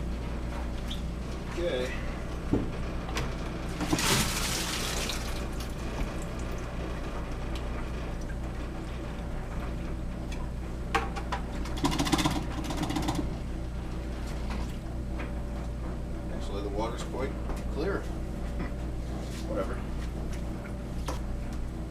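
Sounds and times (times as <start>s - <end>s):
water draining into a bucket: 3.9s - 6.6s.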